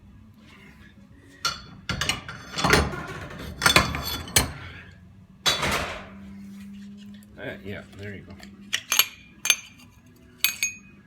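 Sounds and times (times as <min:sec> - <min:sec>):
low steady hum: 0:00.0 - 0:11.0
metal parts clanking: 0:01.5 - 0:04.6, 0:08.3 - 0:11.0.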